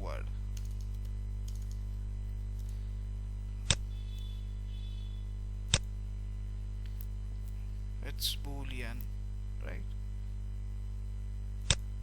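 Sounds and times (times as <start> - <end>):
electrical mains hum: 0.0 - 12.0
computer clicks: 0.6 - 1.8.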